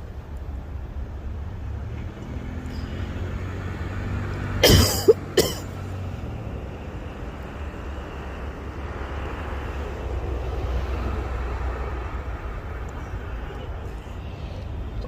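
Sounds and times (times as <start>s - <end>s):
person coughing: 4.6s - 5.7s.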